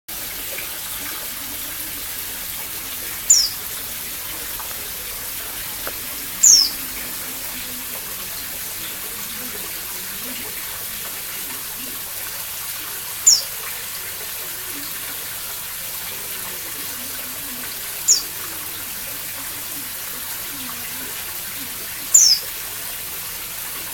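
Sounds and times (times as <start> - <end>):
bird giving high calls: 3.2 - 3.8, 6.1 - 6.9, 18.1 - 18.3, 22.1 - 22.4.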